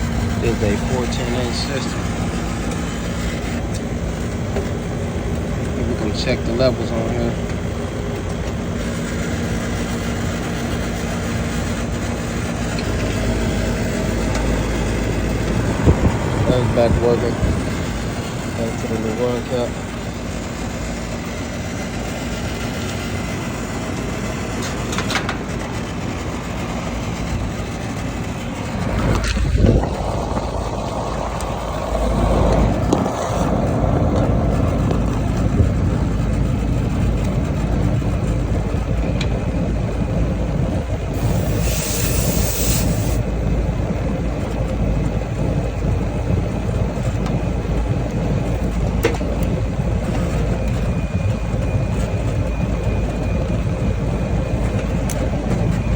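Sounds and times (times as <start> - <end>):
air conditioner unit humming: 0.0 - 55.9
short hiss: 41.2 - 43.2.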